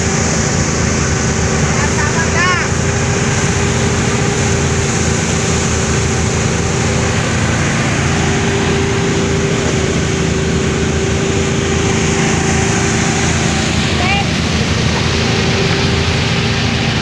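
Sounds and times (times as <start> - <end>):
threshing machine droning: 0.0 - 17.0.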